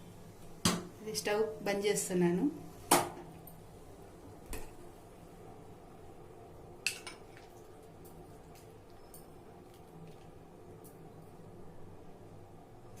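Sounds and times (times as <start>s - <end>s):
faint hum: 0.0s - 13.0s
dishes clinking: 6.8s - 7.4s.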